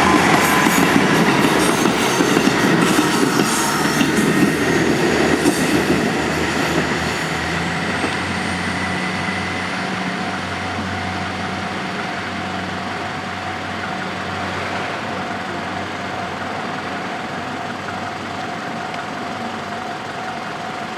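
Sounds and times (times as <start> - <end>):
high wheel squeal: 0.0 - 14.4
train engine hum: 0.0 - 20.9.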